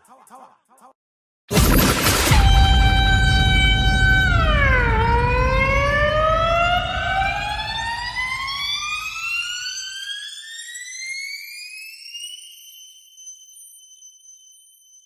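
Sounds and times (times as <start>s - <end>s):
synthesized siren tone: 1.5s - 15.0s
low rumble: 1.6s - 8.6s.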